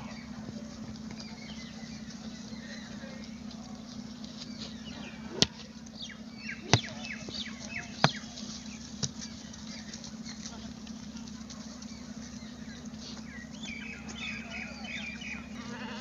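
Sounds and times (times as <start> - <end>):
steady low hum: 0.0 - 16.0
sharp knocks: 6.7 - 7.4.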